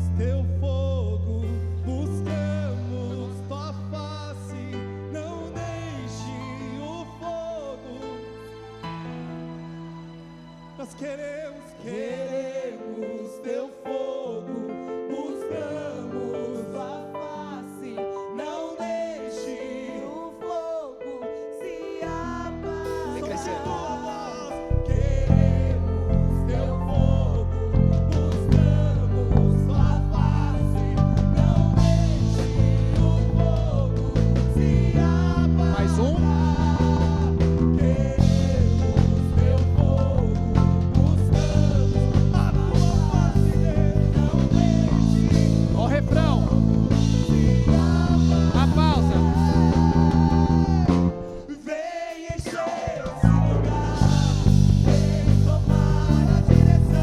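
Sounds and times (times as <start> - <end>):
person singing with vibrato: 0.0 - 8.7, 10.8 - 57.0
keyboard and bass chords: 0.0 - 11.8, 22.1 - 51.5, 52.9 - 57.0
rock band playing: 28.2 - 51.5, 52.5 - 57.0.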